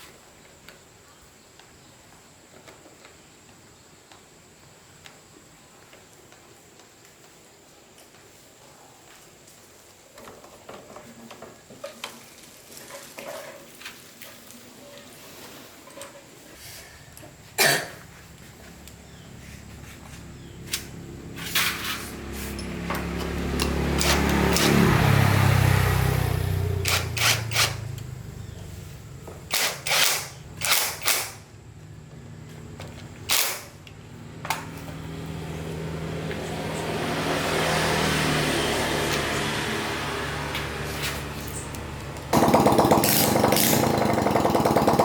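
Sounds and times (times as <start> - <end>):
sharp clicks: 26.8 - 28.1, 29.5 - 31.4.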